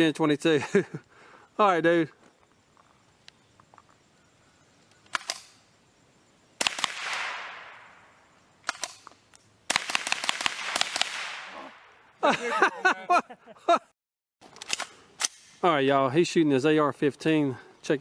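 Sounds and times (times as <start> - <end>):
rifle shots with echo: 6.6 - 9.0, 9.7 - 11.9.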